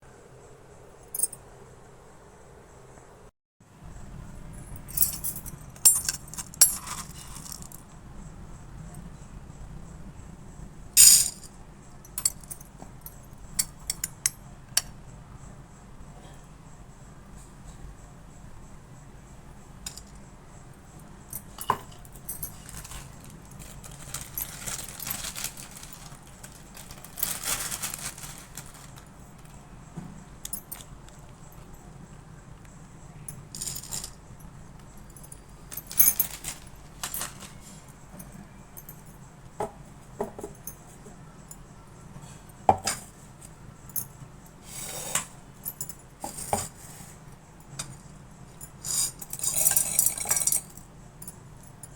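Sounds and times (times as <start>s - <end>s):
utensils clinking and knocking: 35.2s - 38.4s.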